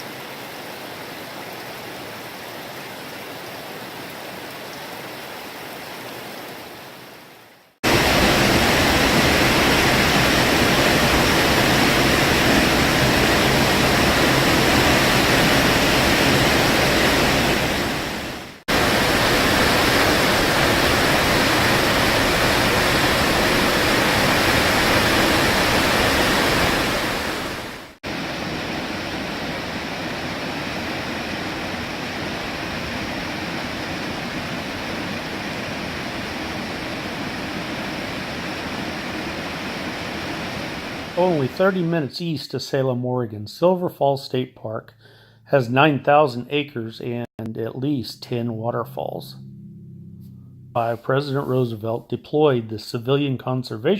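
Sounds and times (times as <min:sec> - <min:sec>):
waterfall rushing: 0:07.8 - 0:42.1.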